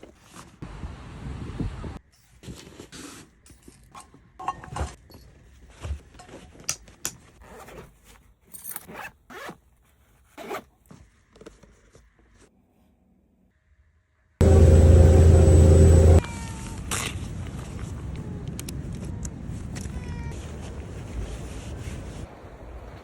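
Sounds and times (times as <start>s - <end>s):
zipper being pulled: 7.4s - 8.1s, 8.7s - 9.6s, 10.3s - 10.7s.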